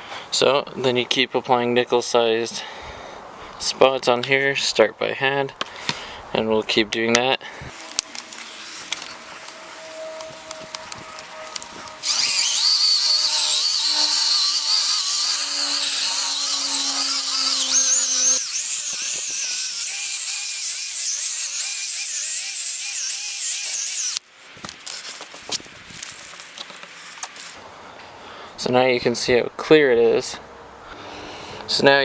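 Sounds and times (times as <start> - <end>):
electric drill whining: 7.7 - 24.2
polishing pad buffing plastic: 7.8 - 24.2.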